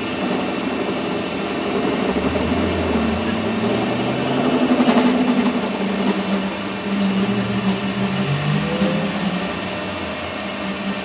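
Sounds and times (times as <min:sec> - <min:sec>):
motor humming: 0:01.6 - 0:11.0.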